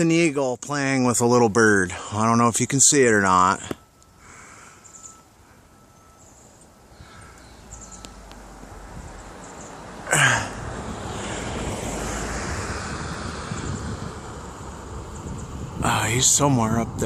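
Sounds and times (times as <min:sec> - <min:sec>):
burst of breath: 0:04.2 - 0:05.0
wind on microphone: 0:08.8 - 0:09.3, 0:10.6 - 0:17.0.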